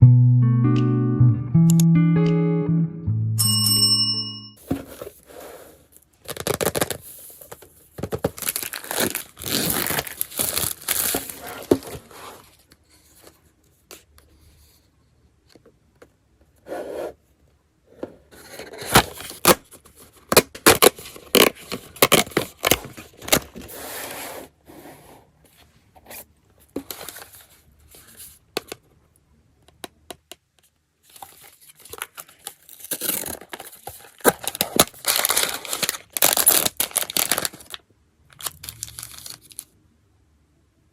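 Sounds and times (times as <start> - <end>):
paper and plastic tearing: 6.2 - 7.0, 8.1 - 12.4, 20.3 - 23.7, 31.2 - 39.8.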